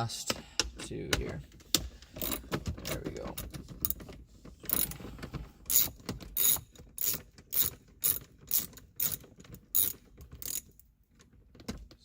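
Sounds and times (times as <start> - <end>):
hand ratchet clicking: 1.7 - 4.0, 4.6 - 5.0, 5.7 - 10.8.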